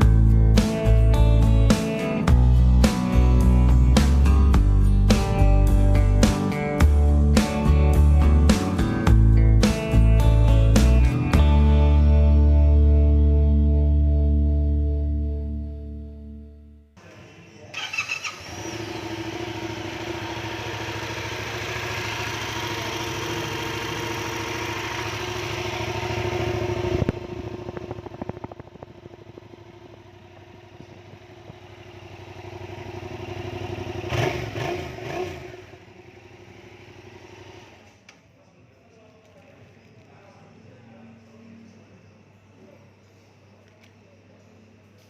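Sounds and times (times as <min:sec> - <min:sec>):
motorcycle engine running: 0:00.0 - 0:13.2, 0:17.8 - 0:37.9
motorcycle throttle blips: 0:19.2 - 0:38.0.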